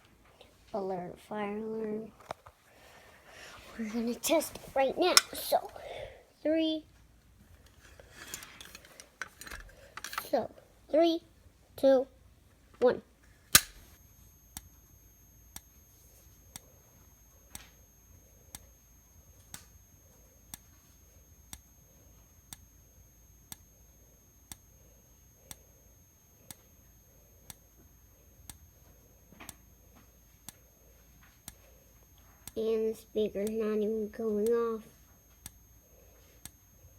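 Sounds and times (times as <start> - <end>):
faint high whine: 13.4 - 36.9
fire alarm click: 13.5 - 36.9
strobe ticking: 13.6 - 36.9.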